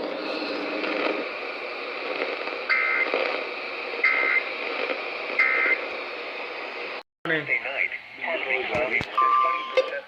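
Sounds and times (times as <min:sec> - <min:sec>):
radio static: 0:00.4 - 0:09.2
digital data tone bursts: 0:02.7 - 0:03.2, 0:04.0 - 0:04.5, 0:05.4 - 0:05.8.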